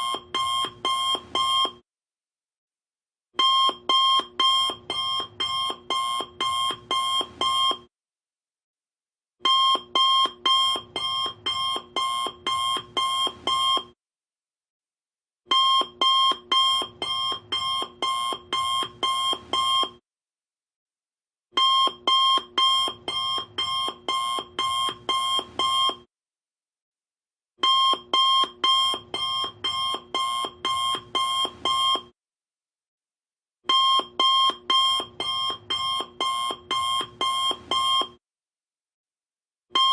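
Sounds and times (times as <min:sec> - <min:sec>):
alarm clock beeping: 0:09.5 - 0:13.8, 0:15.5 - 0:19.9, 0:21.6 - 0:26.0, 0:27.6 - 0:32.0, 0:33.7 - 0:38.2.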